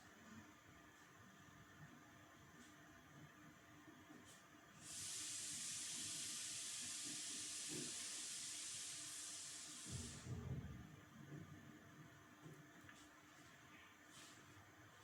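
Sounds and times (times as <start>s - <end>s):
steady hiss: 4.8s - 10.4s.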